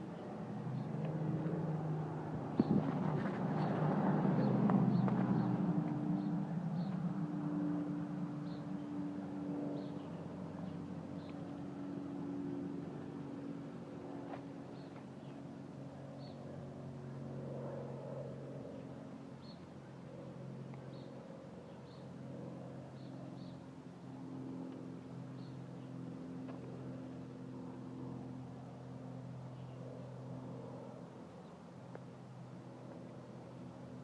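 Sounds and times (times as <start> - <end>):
engine humming: 0.0 - 17.9.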